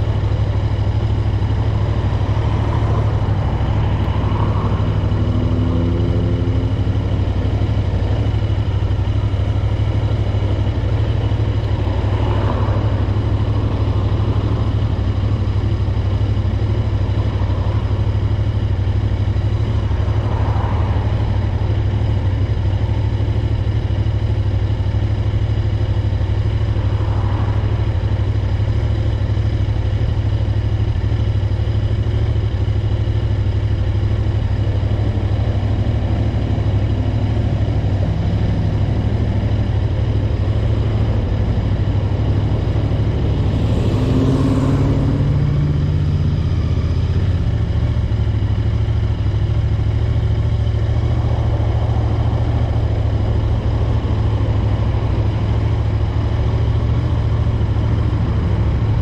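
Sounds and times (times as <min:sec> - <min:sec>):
motorcycle engine running: 0:00.0 - 0:59.0.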